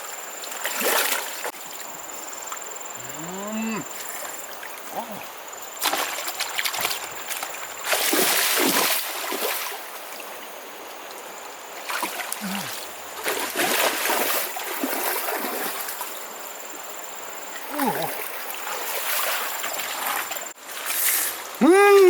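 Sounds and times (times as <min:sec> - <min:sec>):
hands splashing in river water: 0:00.5 - 0:01.6, 0:05.8 - 0:10.2, 0:11.8 - 0:16.2, 0:17.6 - 0:22.0.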